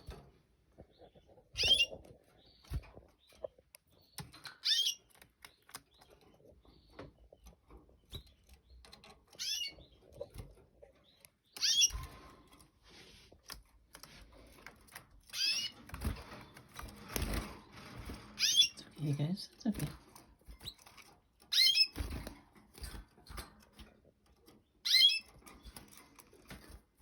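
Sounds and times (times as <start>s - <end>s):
canaries chirping: 0.0s - 27.0s.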